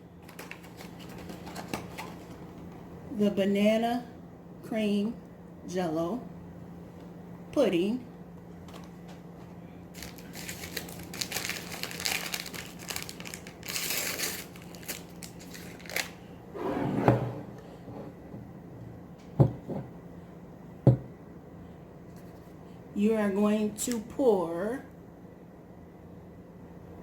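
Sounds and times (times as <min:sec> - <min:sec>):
packaging crinkling and tearing: 0:00.2 - 0:02.4, 0:10.0 - 0:16.3.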